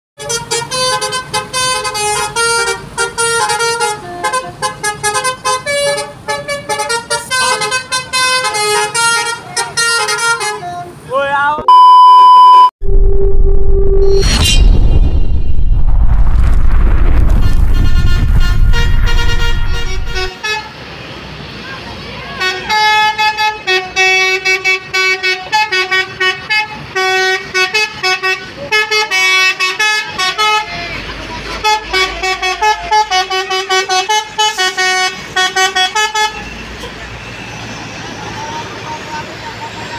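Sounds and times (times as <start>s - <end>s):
musical bus air horn melody: 0.2s - 10.9s, 17.7s - 20.8s, 22.4s - 30.7s, 31.5s - 36.6s.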